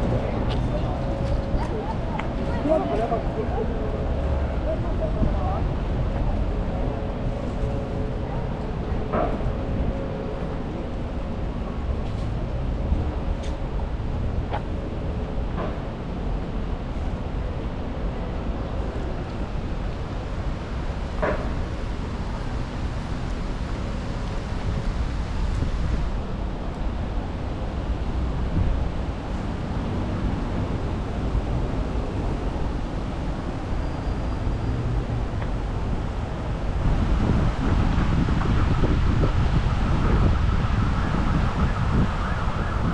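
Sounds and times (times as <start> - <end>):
wind buffeting microphone: 0.0 - 42.9.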